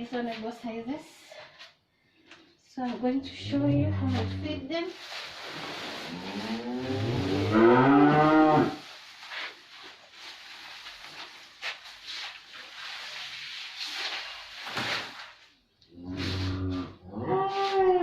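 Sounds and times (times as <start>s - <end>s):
rustling and scuffing: 0.0s - 17.9s
cow mooing: 3.3s - 4.6s, 6.2s - 8.8s.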